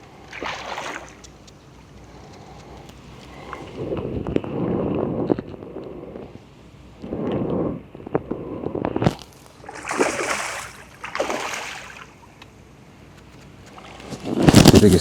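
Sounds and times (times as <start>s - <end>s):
fish splashing in water: 0.3s - 1.2s, 9.1s - 12.2s.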